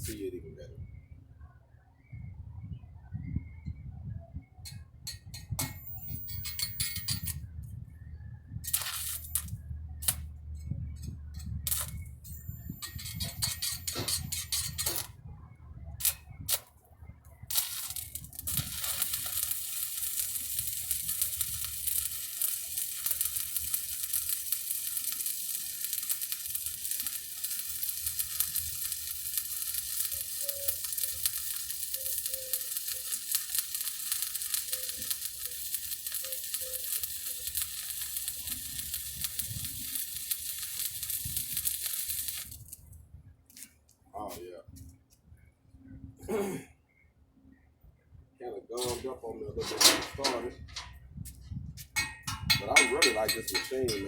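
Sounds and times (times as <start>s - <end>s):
welding arc crackling: 5.4s - 7.4s, 8.6s - 10.4s, 11.5s - 15.2s, 16.0s - 16.8s, 17.5s - 42.8s, 51.9s - 54.0s
sharp clicks and knocks: 51.8s - 54.0s.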